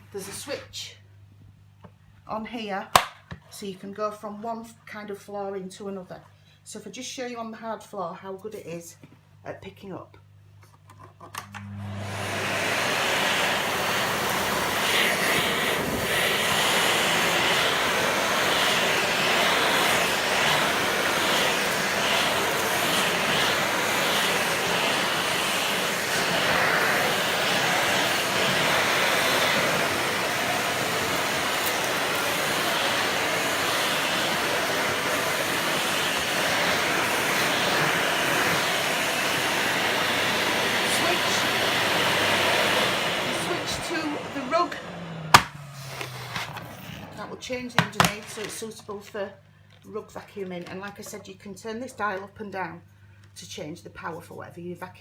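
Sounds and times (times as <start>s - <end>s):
vacuum cleaner motor: 11.3s - 49.1s
suction rushing on hard floor: 11.8s - 48.8s.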